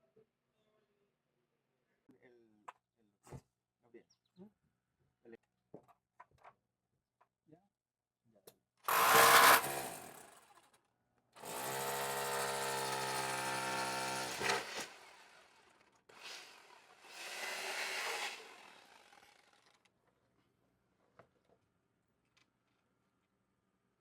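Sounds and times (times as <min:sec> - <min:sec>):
small power tool motor running: 0:08.9 - 0:10.4, 0:11.4 - 0:19.8.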